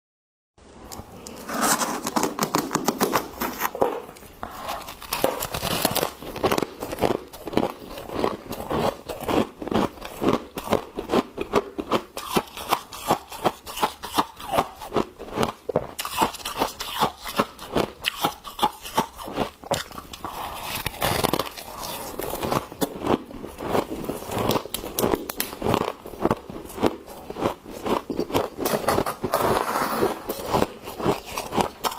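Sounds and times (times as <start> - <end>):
crunchy frost scraping: 1.4 - 3.8, 20.2 - 24.7, 25.6 - 31.9.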